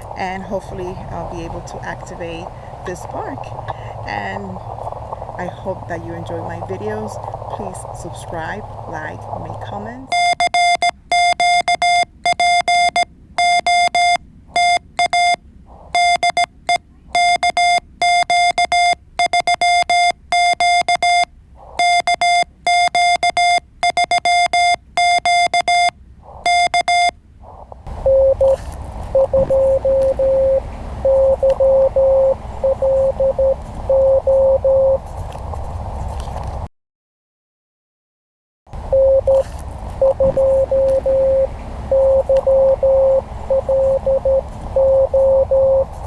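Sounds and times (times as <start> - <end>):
radio band hiss: 0.0 - 10.2, 15.7 - 16.0, 26.2 - 26.6, 27.4 - 36.6, 38.8 - 46.0
lower-pitched morse signal: 0.0 - 35.1, 38.8 - 46.0
high morse code beeps: 5.4 - 27.2, 27.9 - 35.0, 38.9 - 46.0.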